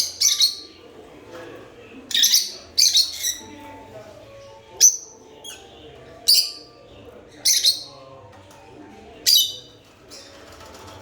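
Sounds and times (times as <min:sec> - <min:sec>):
lovebirds chirping shrilly: 0:00.0 - 0:00.8, 0:02.1 - 0:03.6, 0:04.8 - 0:06.7, 0:07.4 - 0:08.0, 0:09.3 - 0:09.7.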